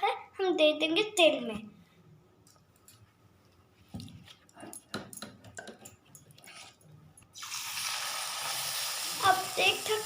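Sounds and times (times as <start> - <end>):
food sizzling in hot oil: 7.4 - 10.0.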